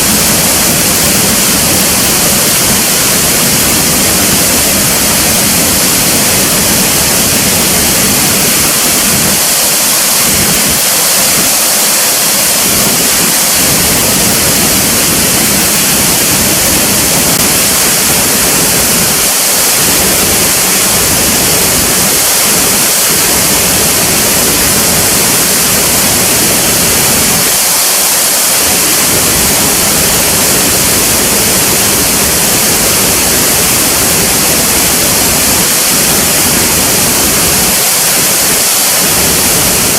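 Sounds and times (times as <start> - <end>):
falling water rushing: 0.0 - 39.9.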